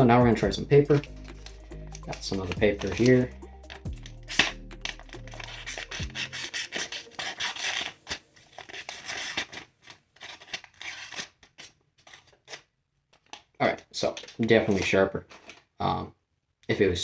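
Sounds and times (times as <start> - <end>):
background music: 0.0 - 9.6
knife blade slicing paper: 2.3 - 12.6.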